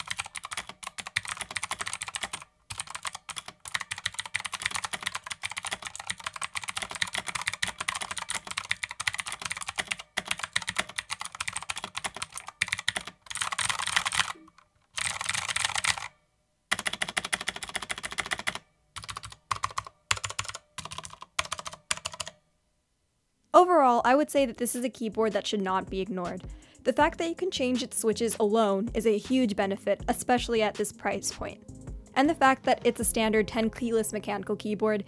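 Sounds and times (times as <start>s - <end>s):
mechanical keyboard typing: 0.0s - 22.4s.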